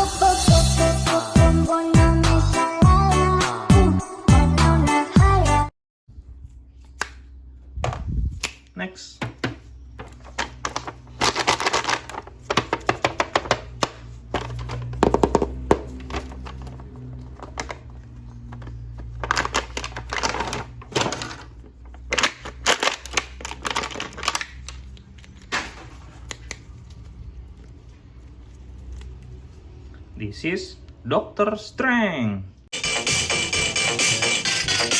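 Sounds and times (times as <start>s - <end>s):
plastic packaging crinkling: 10.0s - 29.5s.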